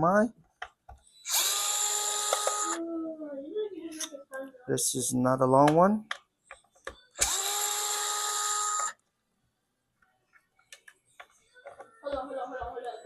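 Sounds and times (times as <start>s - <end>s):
electric screwdriver whining: 1.2s - 2.8s, 7.2s - 9.0s.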